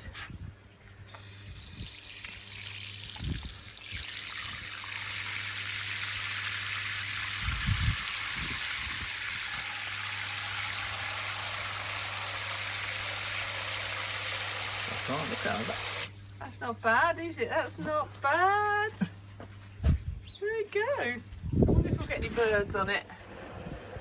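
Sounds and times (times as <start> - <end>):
hose water splashing into bird bath: 1.1 - 17.0.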